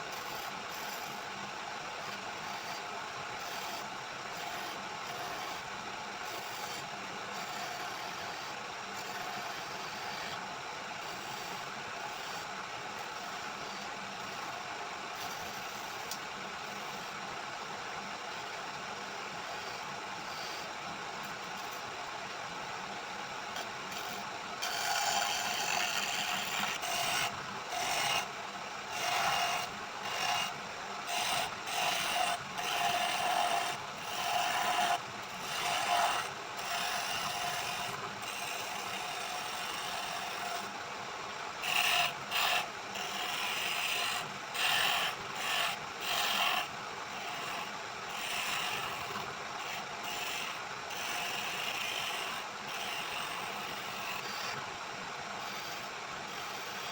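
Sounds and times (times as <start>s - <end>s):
wood lathe humming: 23.9s - 28.3s, 28.9s - 39.0s.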